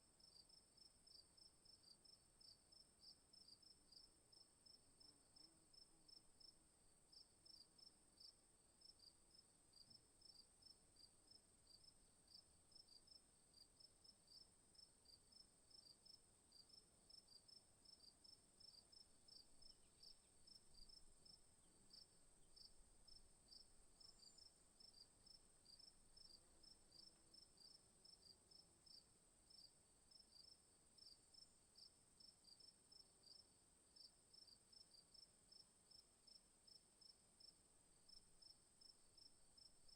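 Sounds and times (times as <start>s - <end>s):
insect chirping: 14.3s - 39.9s.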